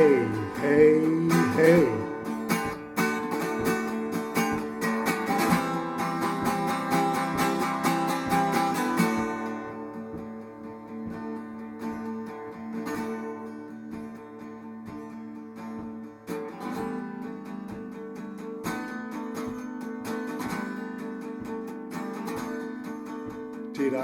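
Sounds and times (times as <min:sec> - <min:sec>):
guitar chords strummed: 0:00.0 - 0:24.0.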